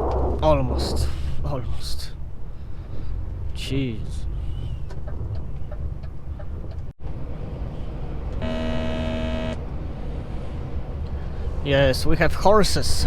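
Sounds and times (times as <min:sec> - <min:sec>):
truck engine and tyres droning: 0:00.0 - 0:12.5
truck horn: 0:08.4 - 0:09.7.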